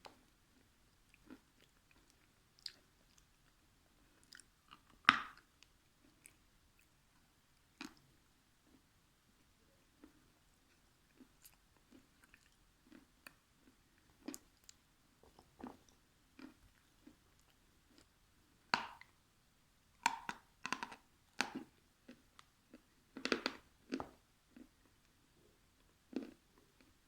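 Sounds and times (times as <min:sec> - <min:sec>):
person chewing food: 0:00.0 - 0:03.4, 0:04.0 - 0:06.9, 0:10.0 - 0:18.1, 0:20.0 - 0:24.8, 0:26.1 - 0:27.0.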